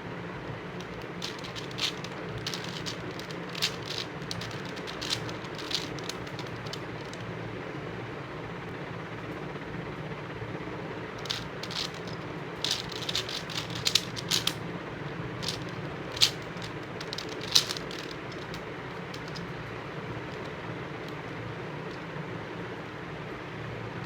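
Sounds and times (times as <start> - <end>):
background hum: 0.0 - 24.0
puzzle cube clicking and rattling: 0.8 - 7.2, 11.2 - 14.6, 15.4 - 21.2.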